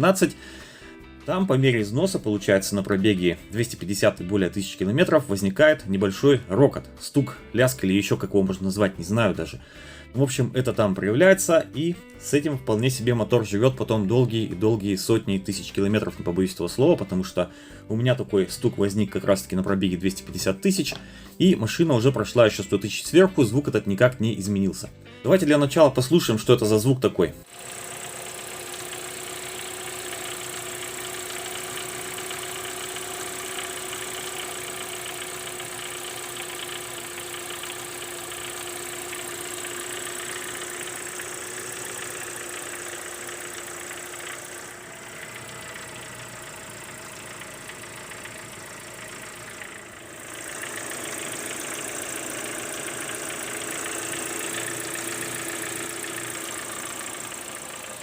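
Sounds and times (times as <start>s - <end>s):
engine idling with rattling clatter: 27.4s - 58.0s.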